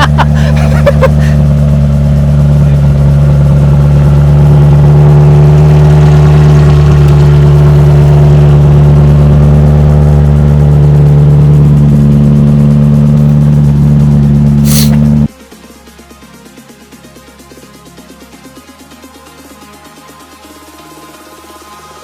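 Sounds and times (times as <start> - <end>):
loud car engine running steadily: 0.0 - 15.3.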